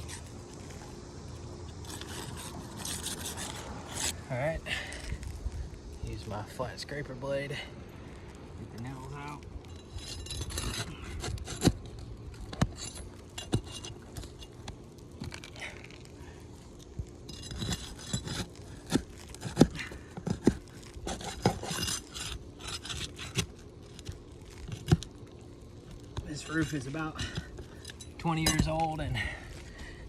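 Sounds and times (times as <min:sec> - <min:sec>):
scraper blade scraping shingles: 0:01.6 - 0:04.3, 0:09.0 - 0:16.1, 0:16.8 - 0:25.2.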